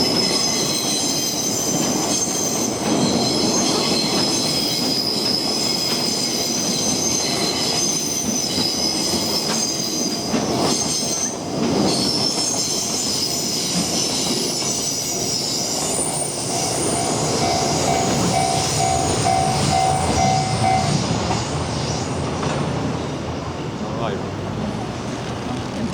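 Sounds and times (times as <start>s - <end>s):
train wheels squealing: 0.0s - 22.7s
level-crossing warning bell: 12.1s - 21.4s.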